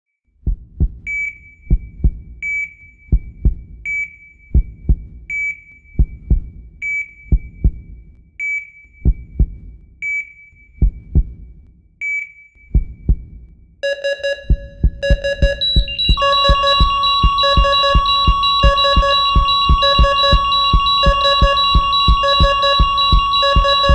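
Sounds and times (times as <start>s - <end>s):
heartbeat thumps: 0.4s - 8.1s, 9.0s - 9.9s, 10.8s - 11.6s, 12.7s - 23.9s
high electronic beep: 13.8s - 23.9s
steady electronic tones: 13.8s - 23.9s.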